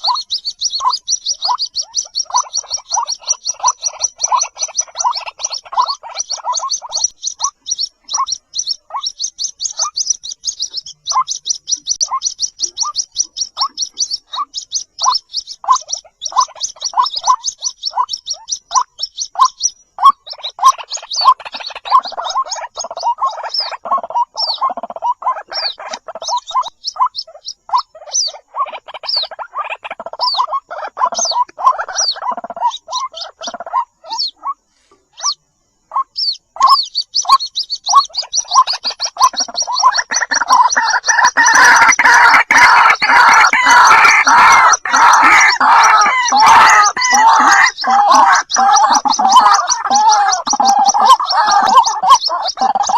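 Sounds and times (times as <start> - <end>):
chorus of gurgling bird calls: 0.0 - 52.9
waterhen call notes: 0.0 - 52.9.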